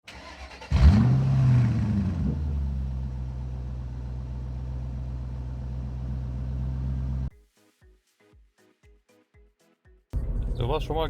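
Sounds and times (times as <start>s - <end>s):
diesel engine idling: 1.6s - 7.3s.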